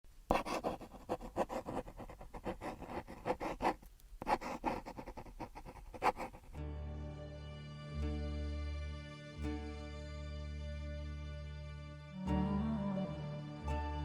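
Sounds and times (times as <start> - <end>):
quick scratching strokes: 0.3 - 6.6.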